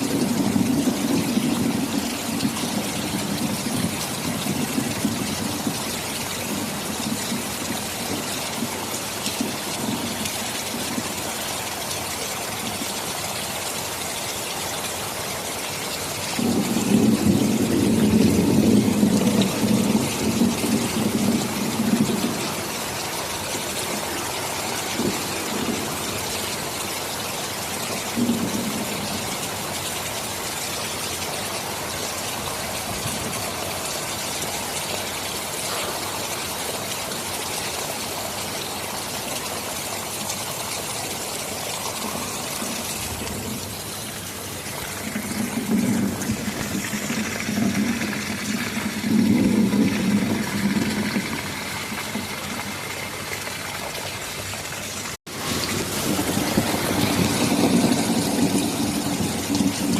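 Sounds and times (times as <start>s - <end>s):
rolling thunder: 0.0s - 11.3s, 16.3s - 26.8s, 27.9s - 29.5s, 41.7s - 53.4s, 55.3s - 59.9s
heavy rain falling: 0.0s - 59.9s.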